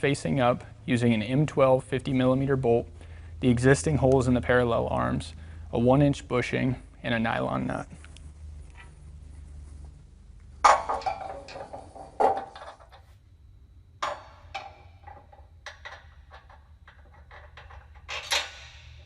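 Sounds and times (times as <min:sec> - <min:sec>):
metal parts knocking and clinking: 0:10.6 - 0:13.1, 0:14.0 - 0:19.0.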